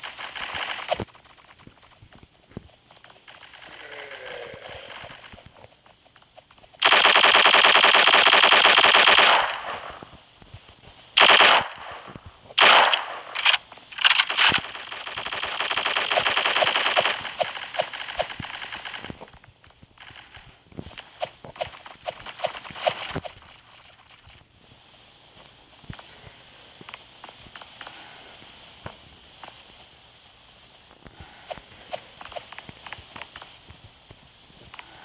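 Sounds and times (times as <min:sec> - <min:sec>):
machine-gun fire: 0:00.0 - 0:02.0, 0:06.8 - 0:10.2, 0:11.2 - 0:19.4, 0:21.6 - 0:23.4.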